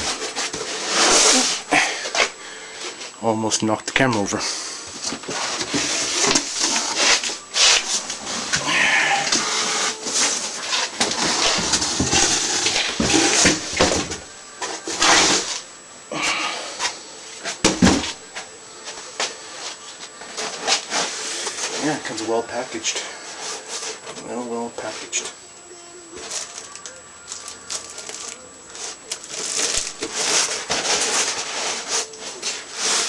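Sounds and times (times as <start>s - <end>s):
cardboard rustling and crackling: 26.2s - 33.0s.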